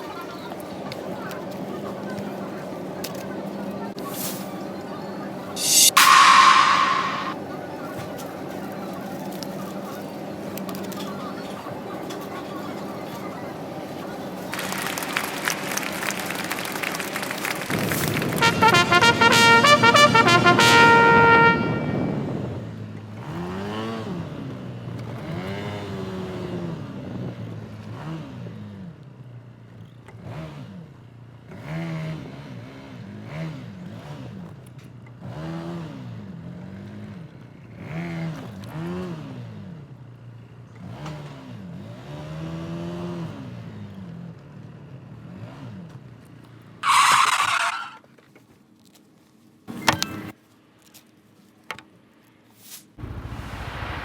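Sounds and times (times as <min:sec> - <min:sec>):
loud rush of noise: 0:05.6 - 0:07.5, 0:53.0 - 0:54.0.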